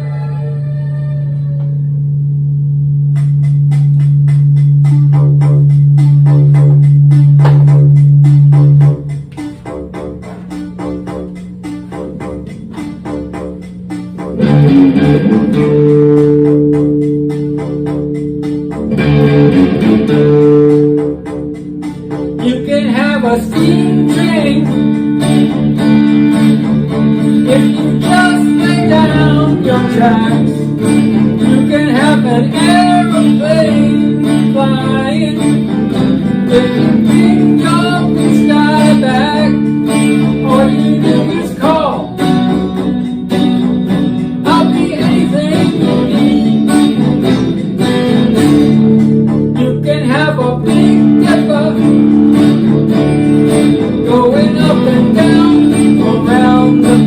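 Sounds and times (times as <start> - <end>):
guitar low chords: 0.0 - 57.0
pitch-bending guitar melody: 0.0 - 57.0.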